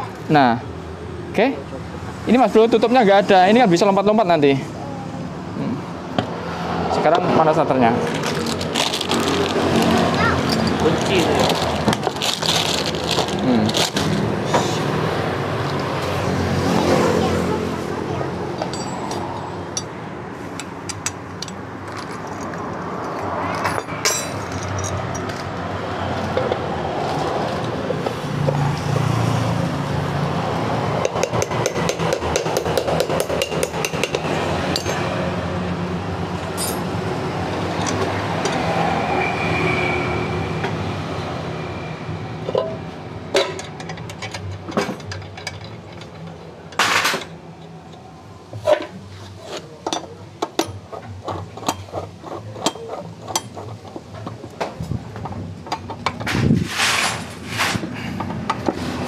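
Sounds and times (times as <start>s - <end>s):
metal tools clinking: 10.4s - 11.8s, 18.6s - 19.9s, 23.5s - 25.5s, 36.6s - 36.9s.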